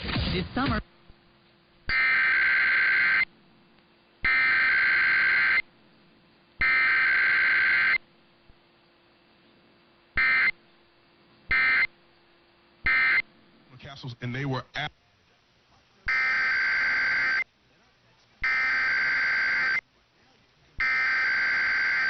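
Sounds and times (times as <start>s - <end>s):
two-tone digital data bursts: 1.9s - 3.3s, 4.2s - 5.6s, 6.6s - 8.0s, 10.2s - 10.6s, 11.5s - 11.9s, 12.8s - 13.3s, 16.1s - 17.5s, 18.4s - 19.8s, 20.8s - 22.0s.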